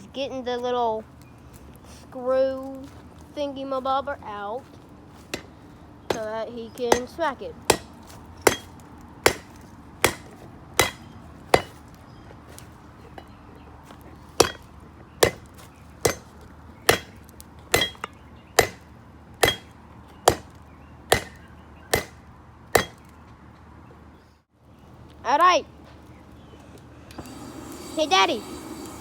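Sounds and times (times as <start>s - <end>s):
hammer striking hot metal: 6.9s - 11.8s, 14.4s - 14.6s, 16.0s - 16.3s, 16.9s - 19.7s, 20.3s - 20.5s, 21.1s - 22.2s, 22.8s - 23.0s.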